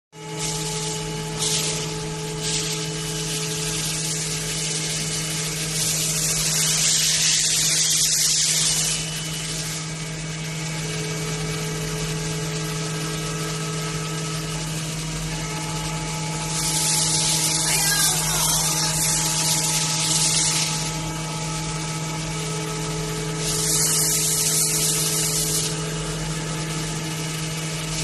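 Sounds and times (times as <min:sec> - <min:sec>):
milling machine humming and whining: 0:00.2 - 0:28.0
bursts of high hiss: 0:16.5 - 0:20.9.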